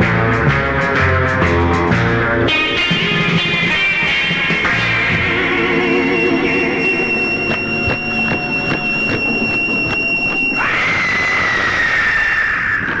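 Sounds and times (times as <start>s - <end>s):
hissy whine falling in pitch: 4.8s - 12.6s
high steady squealing tone: 5.0s - 12.9s
regular ticking: 5.1s - 10.6s.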